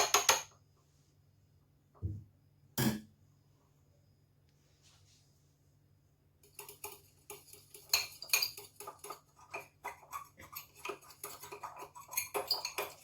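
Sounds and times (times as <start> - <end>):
spoon clinking in a bowl: 6.4 - 13.0.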